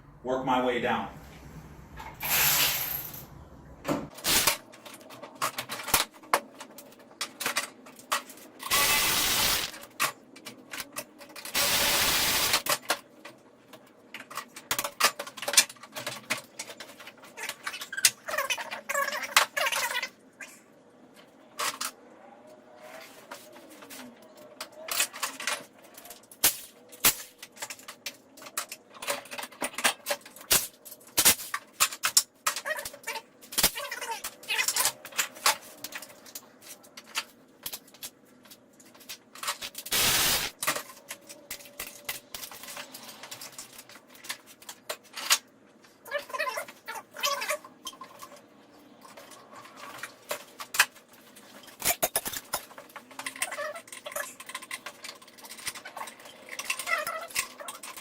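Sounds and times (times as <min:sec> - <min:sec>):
tools and metal parts clinking: 0:49.0 - 0:58.0.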